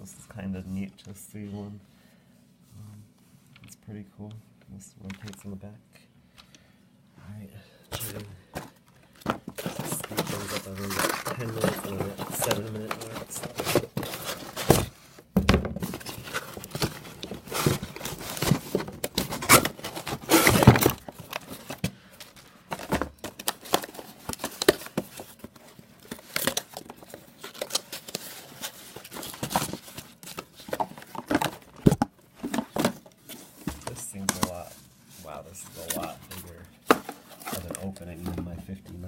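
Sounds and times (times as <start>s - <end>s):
plastic and cardboard crinkling: 7.9s - 39.0s
packaging tearing: 9.6s - 14.9s, 16.0s - 21.8s.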